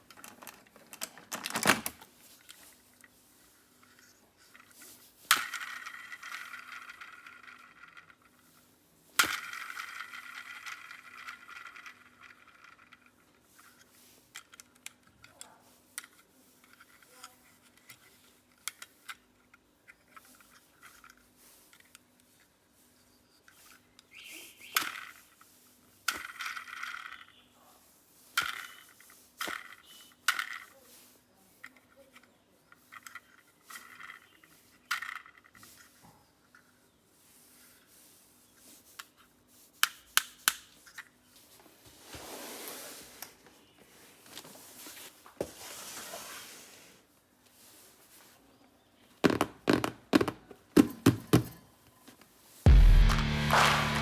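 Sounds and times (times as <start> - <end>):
rustling scrape of packaging: 41.9 - 48.4.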